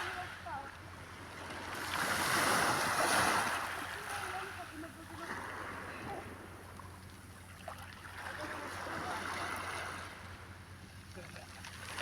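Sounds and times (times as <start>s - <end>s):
waves washing over stony shore: 1.4s - 6.4s.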